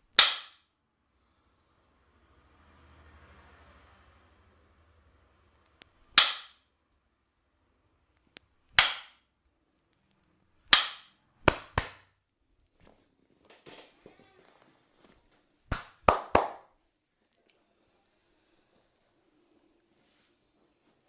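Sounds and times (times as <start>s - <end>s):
sharp percussive cracks: 0.2s - 0.7s, 6.1s - 6.6s, 8.7s - 9.2s, 10.7s - 12.1s, 15.7s - 16.7s.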